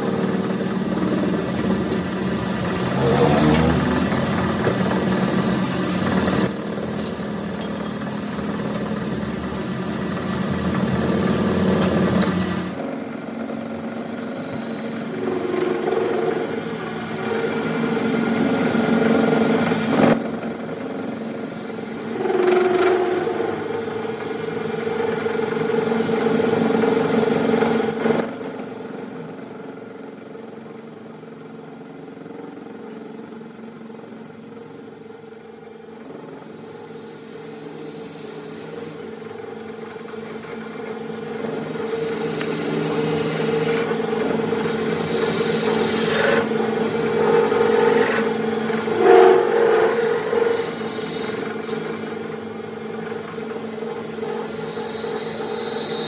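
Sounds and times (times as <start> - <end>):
high whine: 26.8 - 56.0
tools scraping and rubbing: 47.2 - 52.0.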